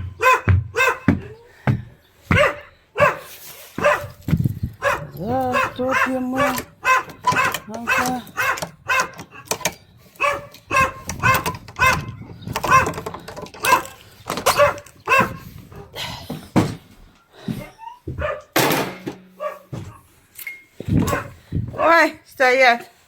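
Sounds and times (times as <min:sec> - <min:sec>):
dog barking: 0:00.0 - 0:01.4, 0:02.3 - 0:04.2, 0:04.8 - 0:16.0, 0:18.1 - 0:18.6, 0:19.3 - 0:20.1, 0:21.0 - 0:22.0.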